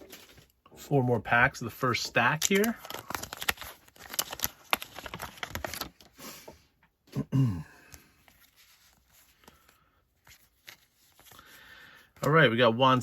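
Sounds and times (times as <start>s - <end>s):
wrapper crinkling and tearing: 2.2s - 6.2s.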